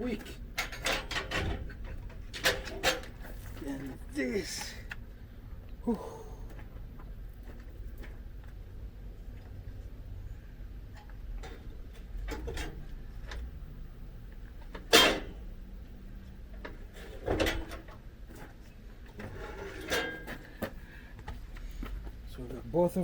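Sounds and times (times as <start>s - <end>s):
heavy parts clunking and knocking: 0.0s - 3.9s, 11.0s - 13.6s, 14.6s - 15.4s, 16.6s - 20.8s.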